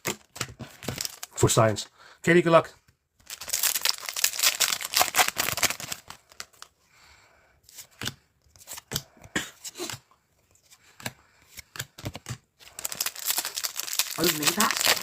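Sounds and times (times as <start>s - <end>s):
wrapper and cards rustling: 0.0s - 1.5s, 3.2s - 6.7s, 9.6s - 15.0s
foil packs tearing: 0.9s - 1.4s, 3.3s - 6.2s, 12.8s - 15.0s.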